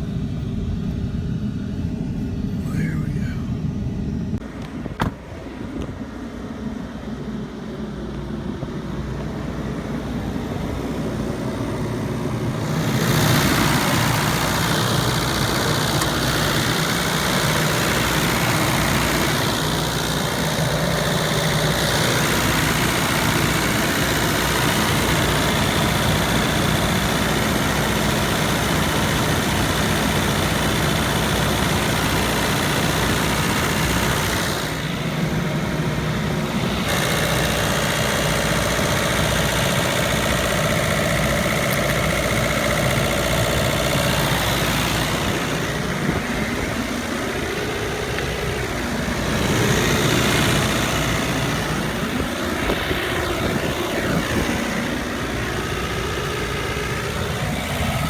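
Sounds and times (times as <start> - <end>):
engine running: 0.0 - 58.0.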